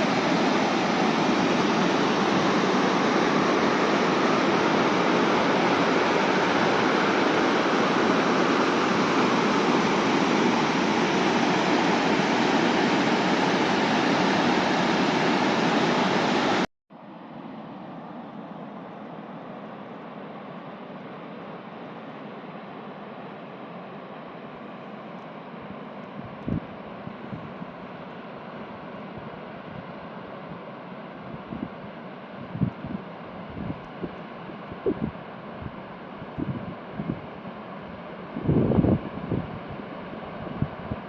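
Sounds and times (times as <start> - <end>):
waterfall rushing: 0.0 - 16.7.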